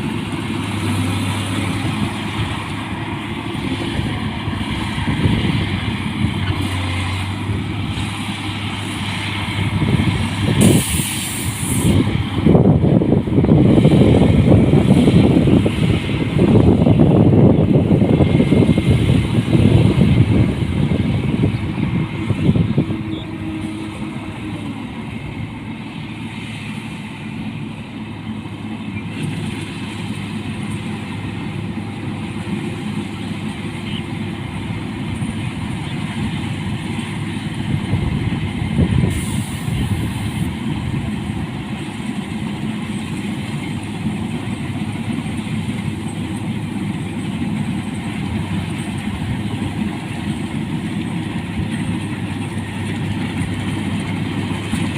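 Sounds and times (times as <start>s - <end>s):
combine harvester engine hum: 0.0s - 54.9s
high hiss: 10.6s - 12.1s.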